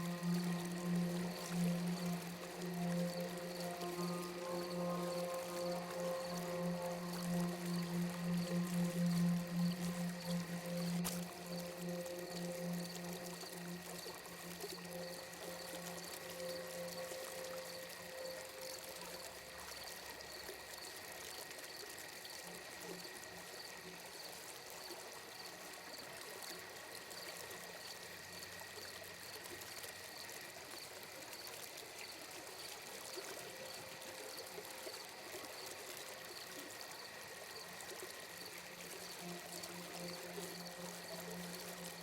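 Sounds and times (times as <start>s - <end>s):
faint pulsing high tone: 0.0s - 20.8s, 33.0s - 42.0s
gently running water: 0.0s - 22.2s, 28.6s - 42.0s.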